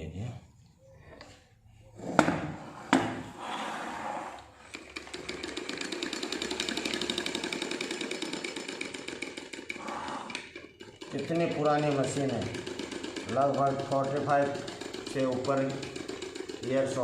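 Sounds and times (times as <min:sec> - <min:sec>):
sewing machine clattering: 0:04.6 - 0:17.0.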